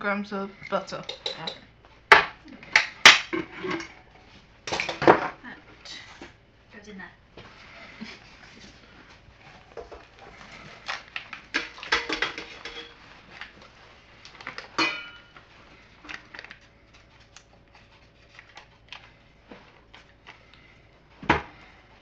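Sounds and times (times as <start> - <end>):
utensils and dishes clinking: 0.6 - 1.7, 11.5 - 13.0, 14.7 - 15.4.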